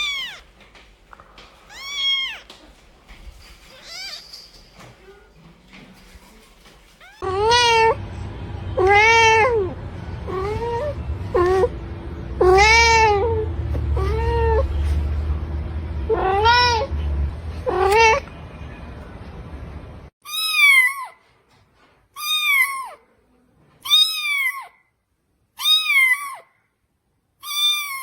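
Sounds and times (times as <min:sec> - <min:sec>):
cat meowing: 0:00.0 - 0:00.6, 0:01.6 - 0:02.6, 0:03.7 - 0:04.4, 0:07.0 - 0:08.0, 0:08.7 - 0:11.8, 0:12.4 - 0:15.1, 0:16.0 - 0:18.4, 0:20.2 - 0:21.2, 0:22.2 - 0:23.0, 0:23.8 - 0:24.8, 0:25.6 - 0:26.5, 0:27.4 - 0:28.0
steady low rumble: 0:07.2 - 0:20.1.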